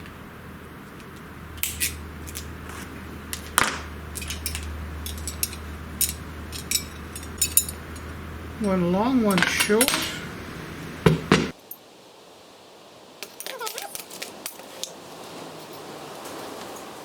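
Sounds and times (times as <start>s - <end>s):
faint low hum: 0.0s - 11.5s
cutters snipping: 0.9s - 11.5s.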